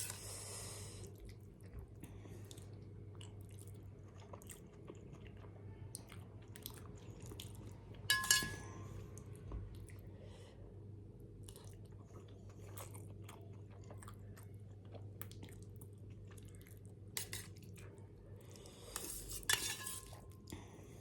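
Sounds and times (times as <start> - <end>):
person chewing with wet smacks: 1.0 - 7.9, 9.2 - 10.1, 11.2 - 18.6
cutlery clinking on dish: 8.1 - 8.8.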